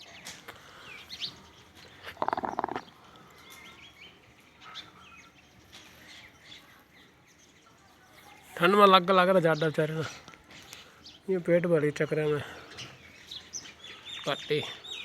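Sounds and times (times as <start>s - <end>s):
small birds chirping: 0.0s - 15.0s
buzzy animal call: 2.1s - 2.9s.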